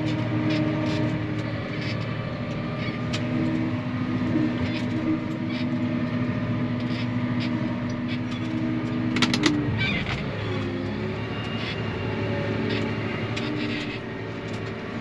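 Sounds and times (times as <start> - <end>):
combine harvester running: 0.0 - 15.0.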